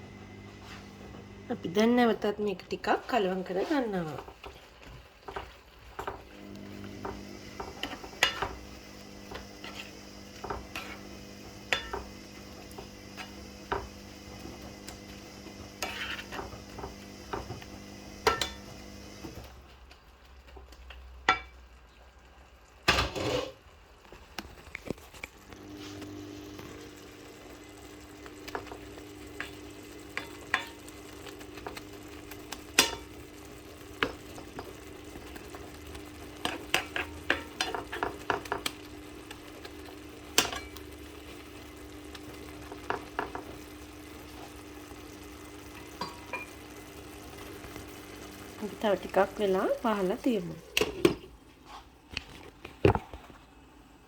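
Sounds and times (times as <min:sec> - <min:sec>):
curry sizzling: 0:00.0 - 0:54.0
spoon clinking and scraping pot: 0:07.0 - 0:08.7, 0:09.3 - 0:13.9, 0:15.7 - 0:17.6, 0:18.2 - 0:18.7, 0:36.3 - 0:38.6, 0:46.0 - 0:46.6.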